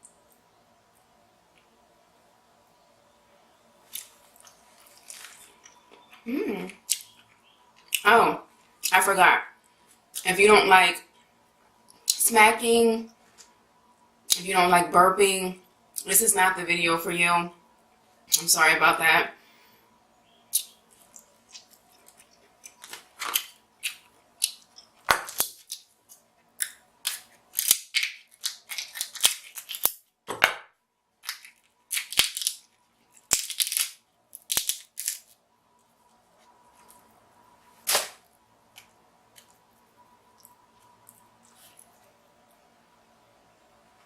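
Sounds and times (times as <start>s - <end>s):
crab shells cracking: 20.6s - 30.4s, 31.2s - 35.4s.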